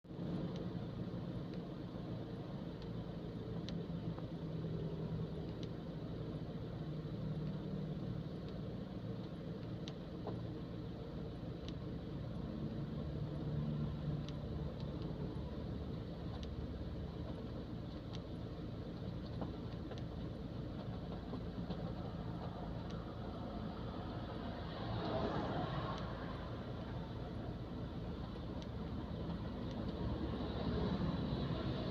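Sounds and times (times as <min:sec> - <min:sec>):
faint sharp ticks: 0:13.4 - 0:15.2.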